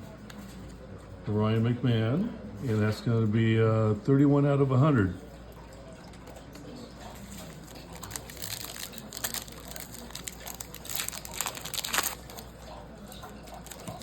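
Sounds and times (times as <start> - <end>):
foil wrapper crinkling and tearing: 7.3 - 14.0.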